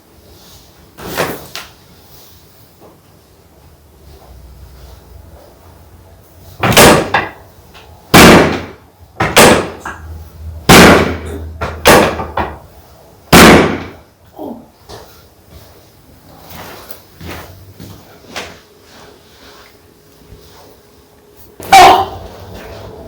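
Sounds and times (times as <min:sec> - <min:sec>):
loud sharp thumps: 0:06.6 - 0:07.4, 0:08.1 - 0:09.9, 0:10.7 - 0:12.6, 0:13.3 - 0:14.0.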